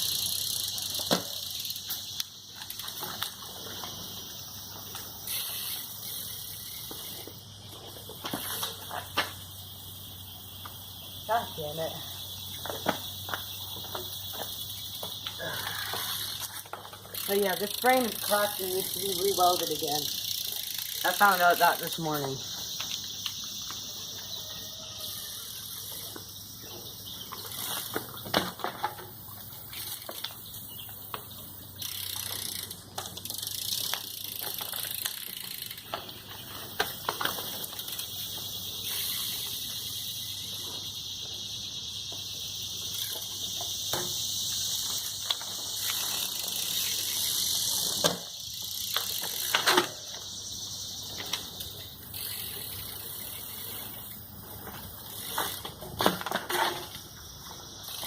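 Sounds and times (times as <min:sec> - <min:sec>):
tyres rolling on pavement: 0:00.0 - 0:58.0
bike knocking on ground: 0:00.7 - 0:03.9, 0:06.7 - 0:09.6, 0:12.4 - 0:15.4, 0:27.0 - 0:38.6, 0:42.0 - 0:46.8, 0:47.5 - 0:50.4, 0:54.6 - 0:57.2.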